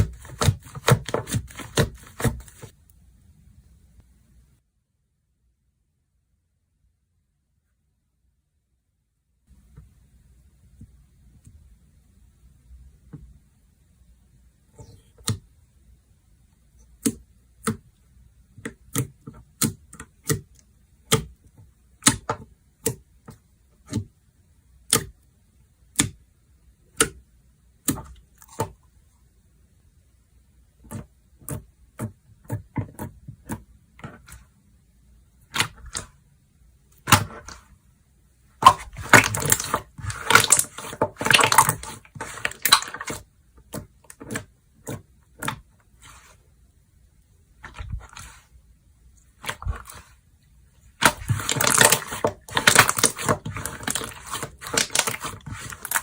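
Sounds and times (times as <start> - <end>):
slime crackling: 38.6 - 45.5, 51.0 - 56.0.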